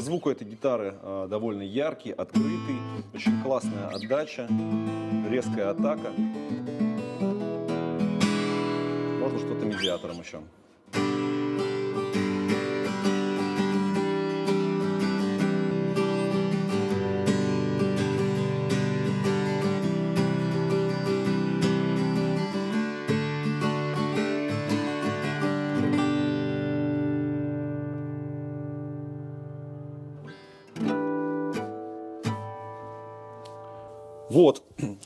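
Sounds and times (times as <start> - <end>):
acoustic guitar strummed with pick: 2.4 - 10.2, 10.8 - 34.3.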